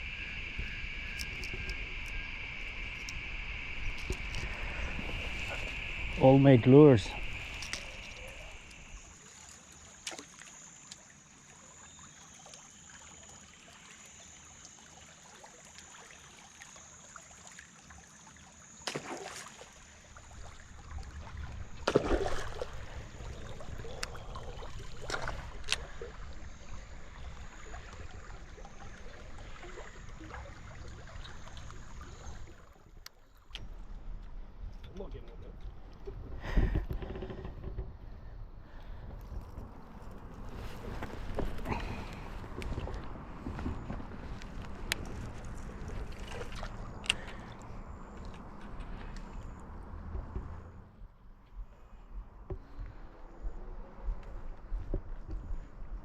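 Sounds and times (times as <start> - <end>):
low rumble: 0.0 - 9.2, 20.1 - 32.6
faint high whine: 0.0 - 56.0
water lapping around boat: 0.0 - 56.0.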